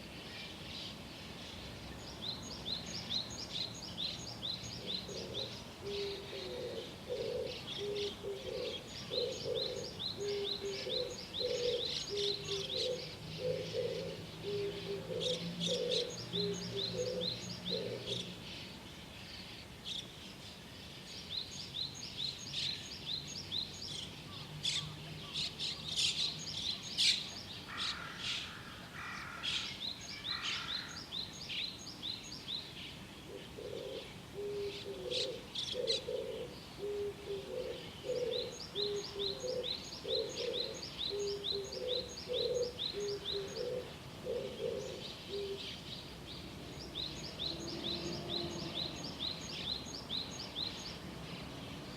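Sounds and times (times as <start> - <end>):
small birds chirping and trilling: 0.0 - 51.9
low two-part cooing call: 4.8 - 18.4, 33.2 - 45.9.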